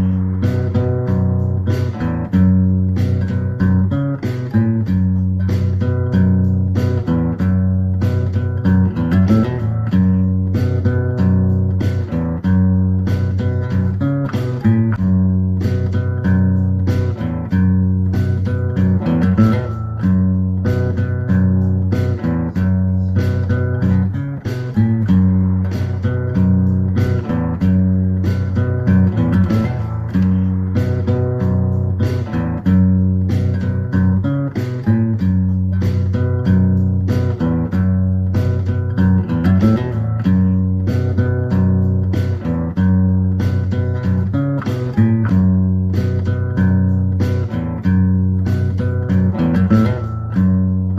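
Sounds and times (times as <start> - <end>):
guitar-led instrumental music: 0.0 - 50.9.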